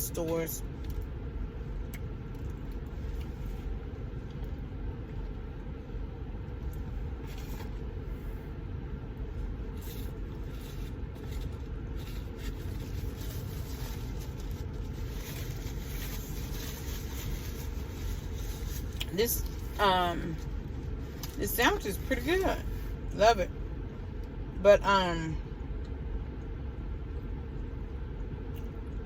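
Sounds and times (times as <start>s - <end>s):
car idling low rumble: 0.0s - 29.0s
faint rustles and clicks: 6.6s - 8.4s, 9.4s - 23.0s.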